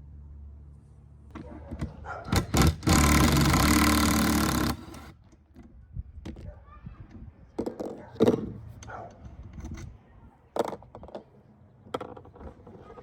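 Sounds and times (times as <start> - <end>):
handling clicks and knocks: 1.3 - 13.0
power tool motor running: 2.3 - 5.2.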